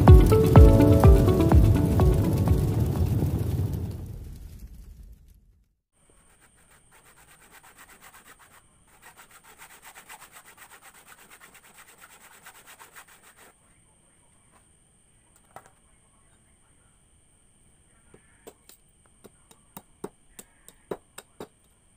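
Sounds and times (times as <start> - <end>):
sandpaper rubbing on wood: 6.1 - 13.6.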